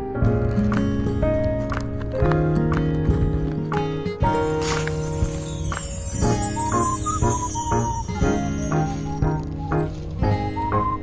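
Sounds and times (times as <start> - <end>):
light jingly tune over a beat: 3.1 - 11.0.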